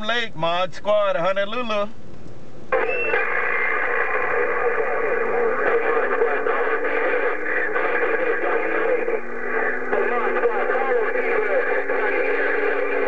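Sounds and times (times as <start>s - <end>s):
garbled radio voices: 2.7s - 13.0s
heterodyne whistle rising: 2.8s - 3.2s.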